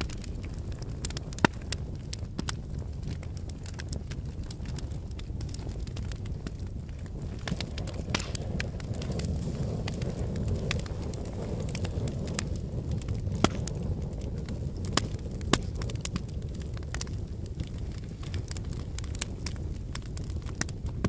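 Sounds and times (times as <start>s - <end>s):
campfire crackling and popping: 0.0s - 21.0s
low steady rumble: 0.0s - 21.0s.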